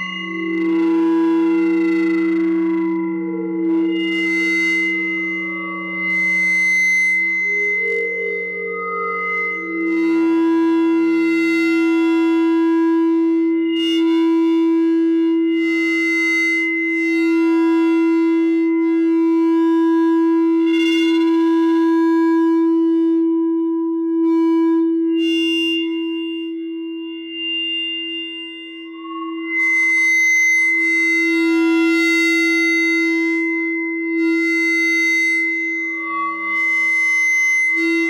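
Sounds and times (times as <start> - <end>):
high whistling tones: 0.0 - 10.0, 24.8 - 38.0
feedback drone tone: 0.0 - 11.2, 20.2 - 38.0.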